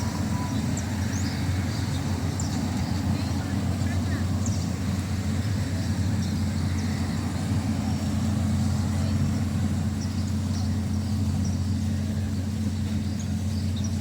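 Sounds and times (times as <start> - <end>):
constant hum: 0.0 - 14.0
traffic engine rumble: 0.0 - 14.0.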